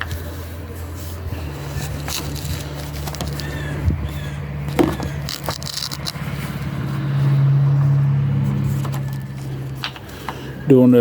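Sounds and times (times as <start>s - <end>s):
vehicle engine humming: 0.0s - 11.0s
plastic latch clicks and scrapes: 1.9s - 3.6s, 4.7s - 6.2s.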